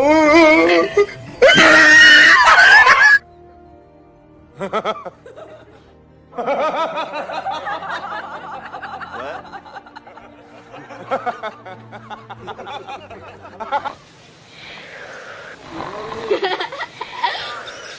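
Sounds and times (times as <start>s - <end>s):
faint background music: 0.0s - 17.9s
snickering laughter: 4.6s - 14.0s, 15.8s - 17.9s.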